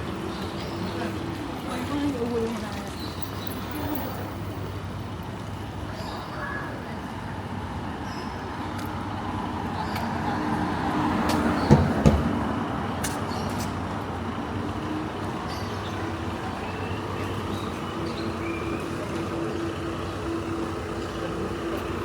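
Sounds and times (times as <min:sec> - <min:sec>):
city street traffic: 0:00.0 - 0:22.0
vehicle engine hum: 0:00.0 - 0:22.0.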